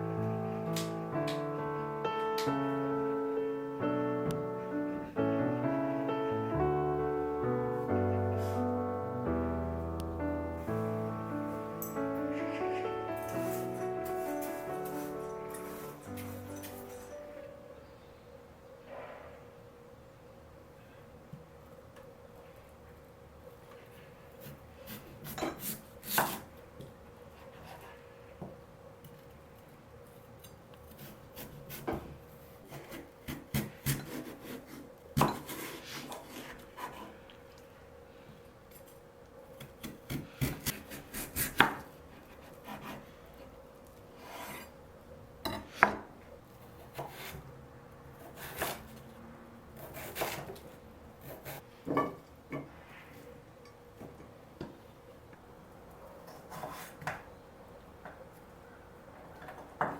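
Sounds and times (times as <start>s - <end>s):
faint steady hum: 0.0s - 59.9s.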